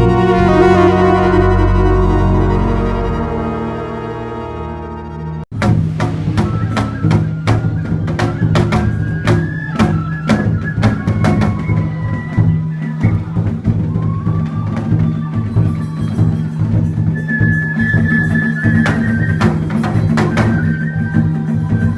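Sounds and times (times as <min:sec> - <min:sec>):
low steady drone: 0:00.0 - 0:08.1
flute playing high notes: 0:00.0 - 0:09.8
clacking percussion and drums: 0:05.5 - 0:11.8.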